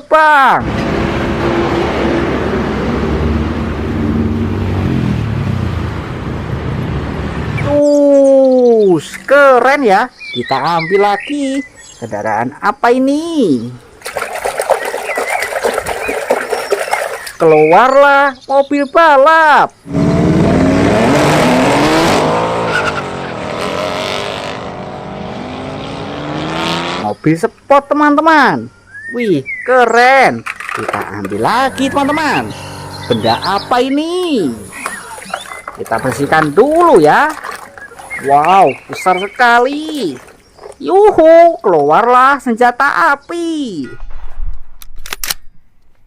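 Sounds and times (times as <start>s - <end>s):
race car engine revving: 0.6s - 7.6s, 19.9s - 27.0s, 31.2s - 36.9s
airplane engine rumble: 30.7s - 40.7s.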